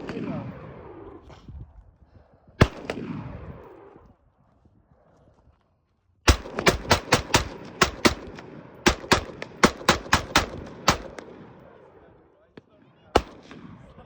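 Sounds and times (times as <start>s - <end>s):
gunshots with echo: 0.0s - 1.1s, 6.3s - 12.0s, 13.1s - 14.0s.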